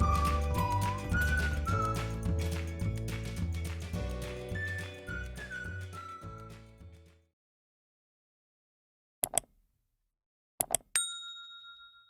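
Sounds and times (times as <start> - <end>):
bright bell-like ding: 11.0 - 12.0.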